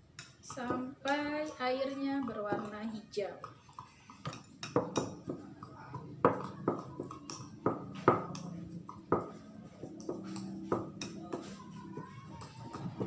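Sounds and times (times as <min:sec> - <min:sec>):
spoon knocking and scraping bowl: 0:00.2 - 0:13.0.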